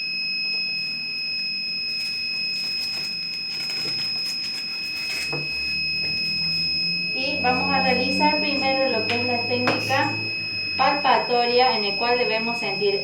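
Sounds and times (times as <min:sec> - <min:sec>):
high-pitched whine: 0:00.0 - 0:13.0
rustling and scratching handling: 0:01.9 - 0:05.4.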